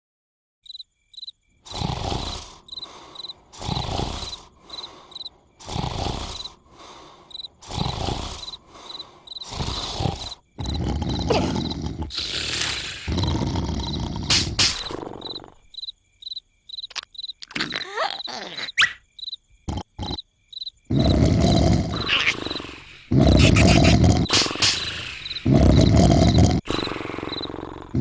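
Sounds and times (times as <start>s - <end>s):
crickets chirping: 0.6s - 28.0s
cartoon snoring: 1.6s - 15.7s, 19.7s - 20.2s, 20.9s - 28.0s.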